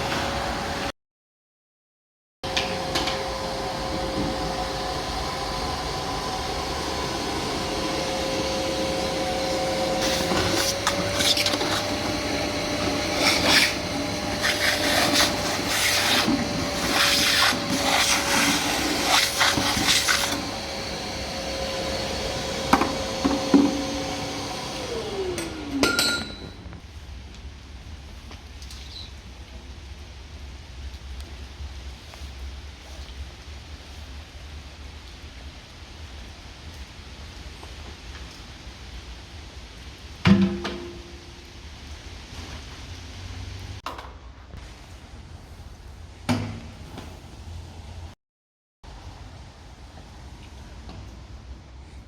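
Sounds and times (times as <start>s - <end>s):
vacuum cleaner motor whine: 0.0s - 0.9s, 2.4s - 26.4s.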